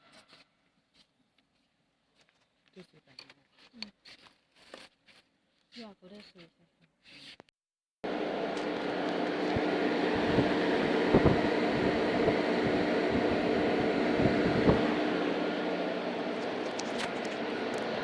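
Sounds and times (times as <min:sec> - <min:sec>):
machine humming: 0:08.0 - 0:18.0.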